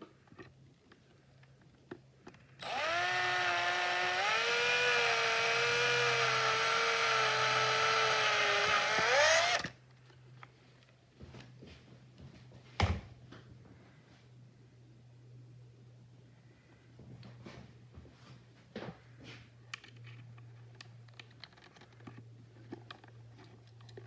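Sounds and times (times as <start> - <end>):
power drill whining: 2.6 - 9.7.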